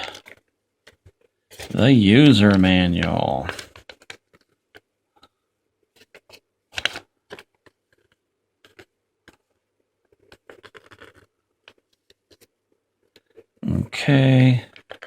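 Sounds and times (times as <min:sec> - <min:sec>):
paper packaging rustling: 0:00.0 - 0:04.6, 0:05.9 - 0:09.5.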